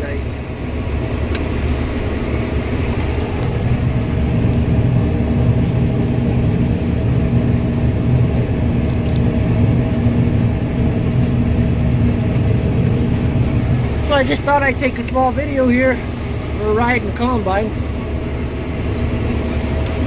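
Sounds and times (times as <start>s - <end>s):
combine harvester engine drone: 0.0s - 20.0s.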